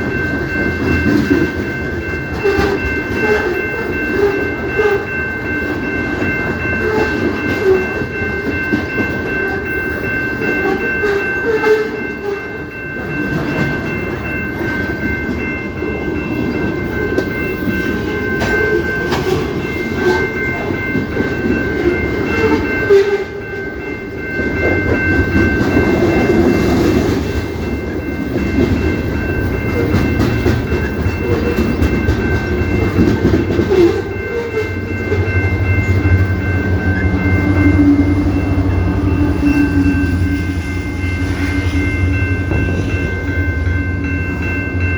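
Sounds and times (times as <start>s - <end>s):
steady high tones: 0.0s - 44.9s
train rumble with wheel clatter: 0.0s - 44.9s.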